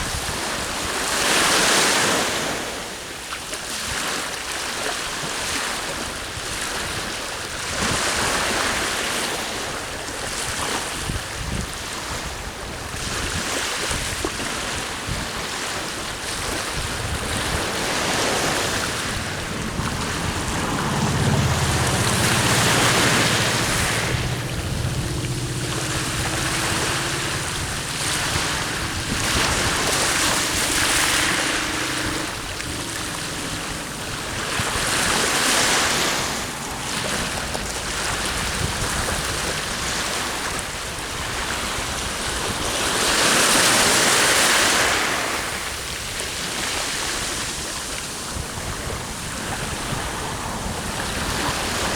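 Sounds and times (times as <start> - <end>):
sea waves washing ashore: 0.0 - 51.9
wind: 0.0 - 51.9
low motor drone: 17.0 - 39.7.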